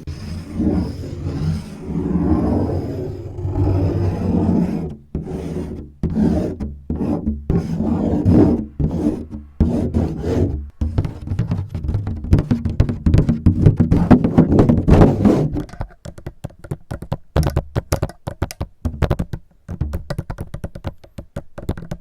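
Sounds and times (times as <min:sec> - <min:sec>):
fingers scratching a surface: 0:00.0 - 0:15.7.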